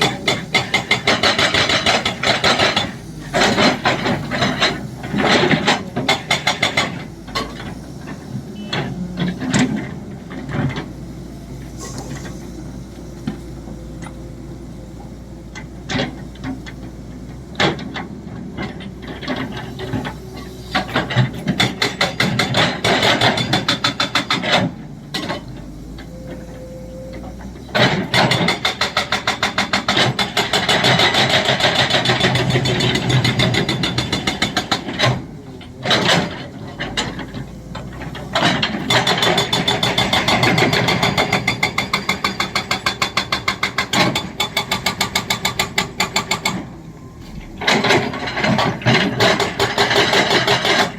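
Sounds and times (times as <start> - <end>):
hydraulic breaker hammering: 0.0 - 7.6, 27.8 - 46.7, 47.4 - 50.9.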